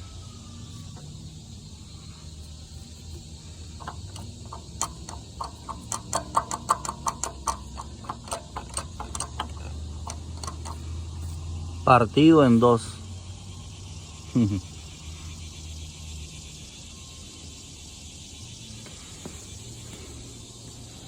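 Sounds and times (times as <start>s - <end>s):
car engine idling: 0.0s - 14.2s
sharp irregular ticks: 0.7s - 11.6s.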